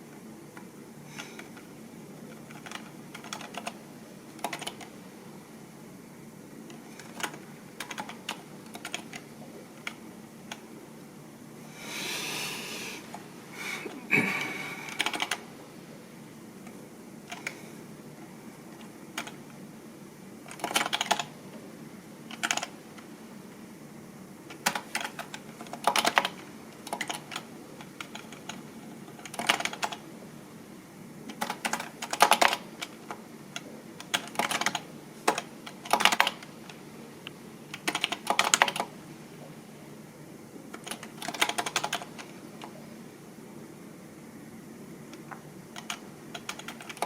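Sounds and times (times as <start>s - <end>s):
computer keyboard typing: 0.6s - 5.0s, 6.7s - 10.7s, 14.8s - 15.5s, 17.3s - 17.6s, 18.7s - 19.6s, 20.4s - 21.4s, 22.3s - 23.1s, 24.5s - 30.1s, 31.3s - 36.8s, 37.7s - 39.0s, 40.7s - 42.8s, 45.2s - 47.0s.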